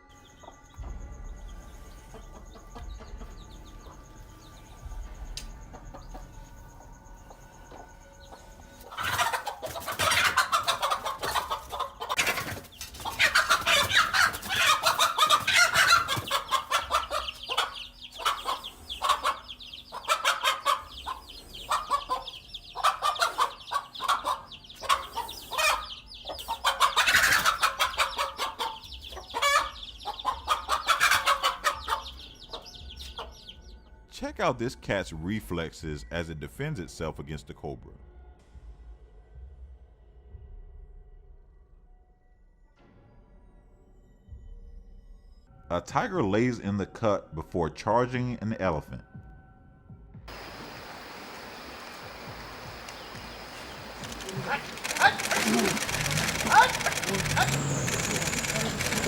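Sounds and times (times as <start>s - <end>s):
hen clucking and squawking: 7.7s - 33.4s, 51.4s - 59.0s.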